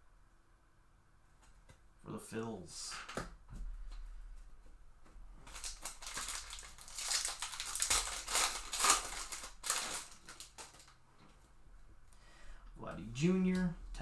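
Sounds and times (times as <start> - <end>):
card pack wrapper crackling: 5.4 - 11.0.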